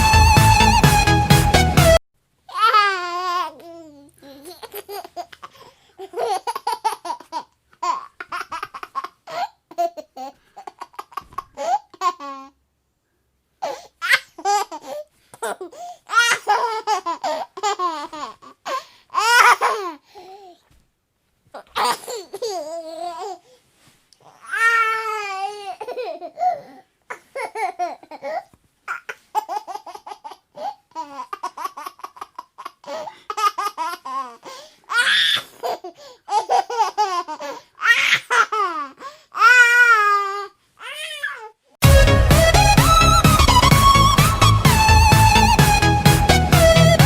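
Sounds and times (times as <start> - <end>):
baby laughing: 2.5 - 12.6, 13.6 - 20.0, 24.4 - 40.4.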